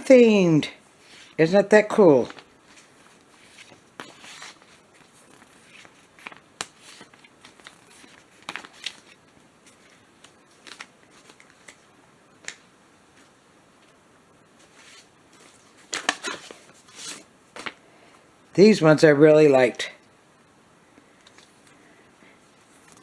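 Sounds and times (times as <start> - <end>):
paper sheets rustling: 0.9 - 13.4, 14.6 - 17.8.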